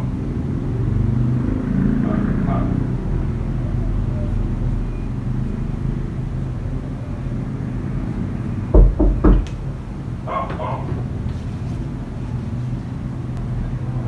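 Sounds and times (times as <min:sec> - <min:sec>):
low mechanical rumble: 0:02.0 - 0:14.0
heavy knocks: 0:08.7 - 0:11.4.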